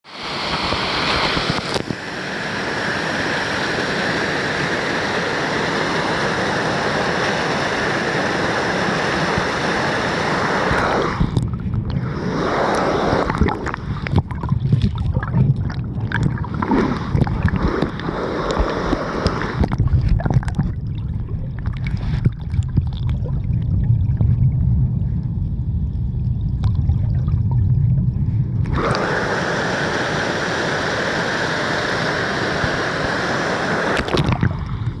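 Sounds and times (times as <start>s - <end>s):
stream water rushing: 0.1s - 20.7s, 28.7s - 35.0s
underwater bubbling and crackles: 0.5s - 2.2s, 10.3s - 29.2s, 32.7s - 35.0s.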